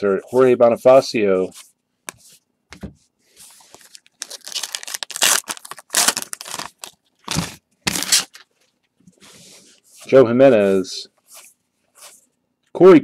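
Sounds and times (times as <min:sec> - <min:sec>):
plastic wrapper tearing and crinkling: 0:03.8 - 0:08.5.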